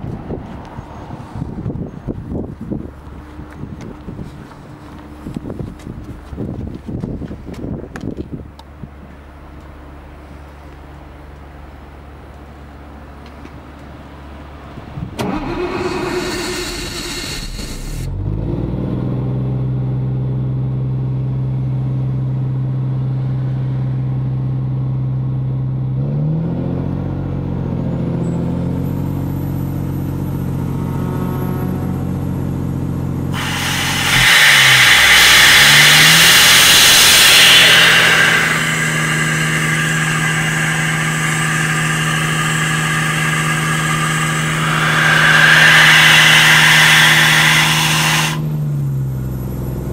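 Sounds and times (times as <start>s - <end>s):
diesel engine running: 0.0s - 26.0s, 27.0s - 49.9s
loud air hiss: 15.2s - 18.1s, 33.3s - 48.6s.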